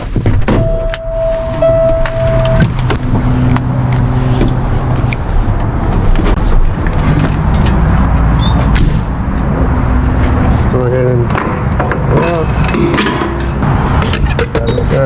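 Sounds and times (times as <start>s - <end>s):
scattered clicks and knocks: 11.2s - 15.0s.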